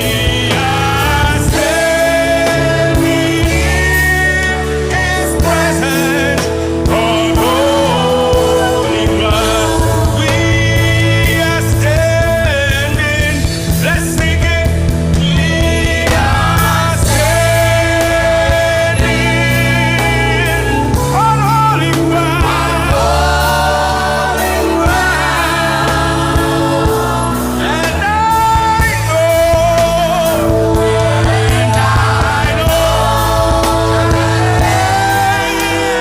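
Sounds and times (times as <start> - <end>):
band accompaniment with bass: 0.0 - 36.0
voices singing gospel song: 0.0 - 36.0.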